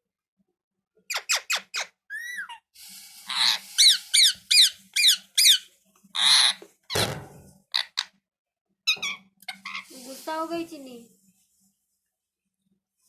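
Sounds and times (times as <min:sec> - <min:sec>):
parrot squeaking and squawking: 0:01.1 - 0:08.2, 0:08.8 - 0:09.9.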